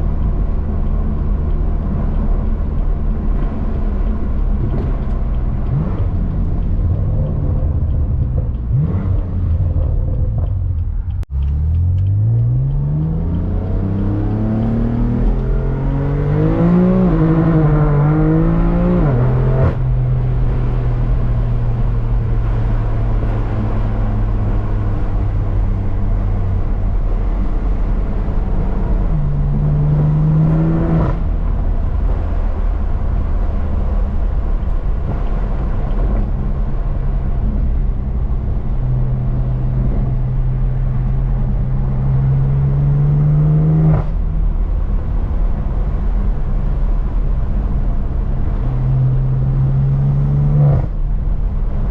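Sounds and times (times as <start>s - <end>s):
exhaust crack on upshift: 0.0s - 15.6s
car engine accelerating: 0.0s - 51.9s
road drone: 0.0s - 51.9s.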